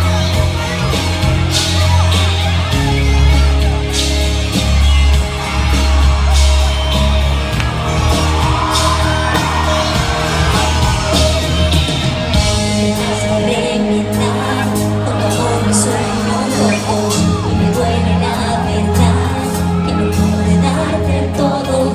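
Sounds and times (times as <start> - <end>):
crowd yelling: 0.0 - 21.9
live pop-rock band playing: 0.0 - 21.9
person singing: 5.3 - 21.9.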